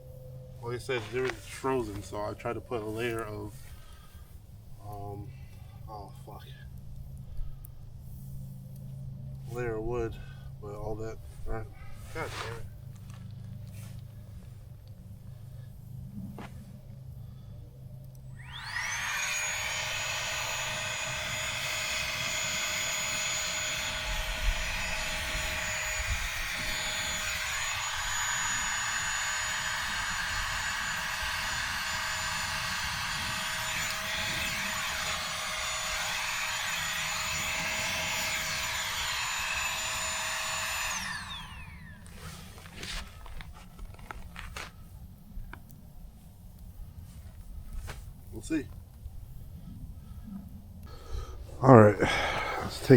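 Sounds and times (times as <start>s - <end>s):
electric fan whining: 16.4s - 44.9s.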